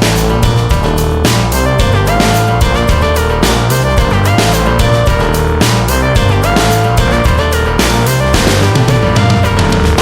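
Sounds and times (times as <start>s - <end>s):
electronic music with heavy bass: 0.0s - 10.0s.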